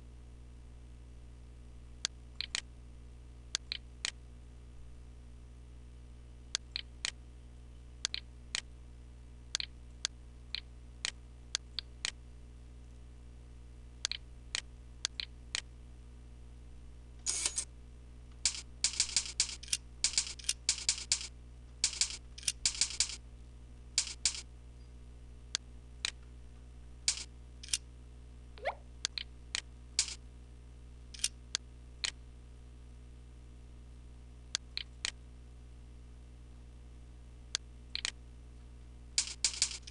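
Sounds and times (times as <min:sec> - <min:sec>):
low steady hum: 0:00.0 - 0:39.9
computer mouse clicking: 0:02.4 - 0:02.6, 0:08.0 - 0:08.7, 0:18.5 - 0:23.2, 0:38.0 - 0:38.2, 0:39.2 - 0:39.9.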